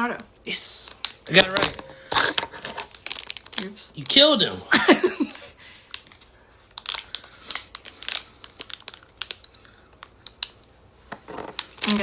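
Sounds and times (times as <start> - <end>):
plastic packaging crinkling: 0.7 - 4.5, 5.7 - 12.0.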